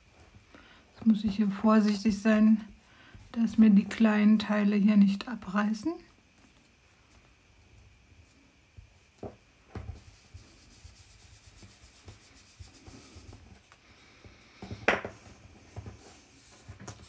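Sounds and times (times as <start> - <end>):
pad rubbing on paper: 9.9 - 13.7.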